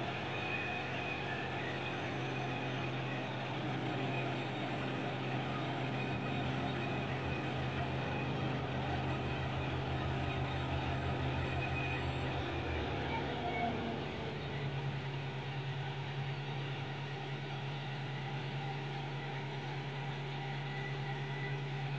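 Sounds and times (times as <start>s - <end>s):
diesel engine humming: 5.4s - 15.0s.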